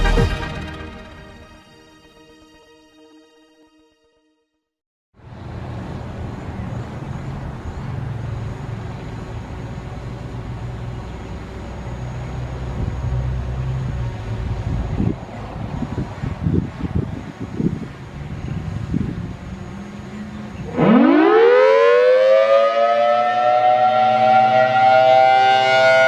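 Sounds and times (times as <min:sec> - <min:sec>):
low rumbling background noise: 0:05.2 - 0:20.8.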